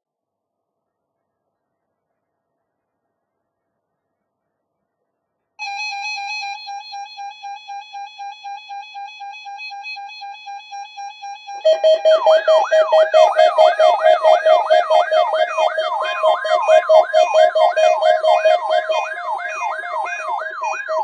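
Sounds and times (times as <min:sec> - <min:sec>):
rising and falling siren sweep: 0:11.6 - 0:21.0
lower pulsing tone: 0:11.7 - 0:21.0
rapidly pulsing beep: 0:11.7 - 0:21.0.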